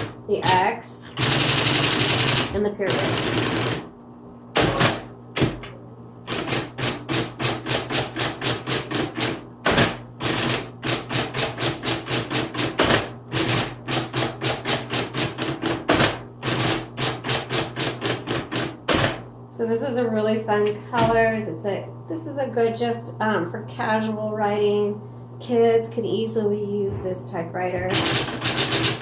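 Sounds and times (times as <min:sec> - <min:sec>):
typewriter typebars striking: 0:01.2 - 0:03.8, 0:04.6 - 0:05.6, 0:06.3 - 0:19.2, 0:27.9 - 0:29.0
typewriter auto-repeating key: 0:01.2 - 0:03.9, 0:04.6 - 0:05.6, 0:06.3 - 0:19.2, 0:27.9 - 0:29.0.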